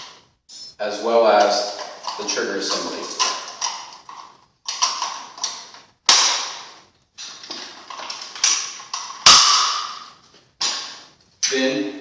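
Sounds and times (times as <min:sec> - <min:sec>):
metallic clicks of rifle parts: 0:01.8 - 0:05.8.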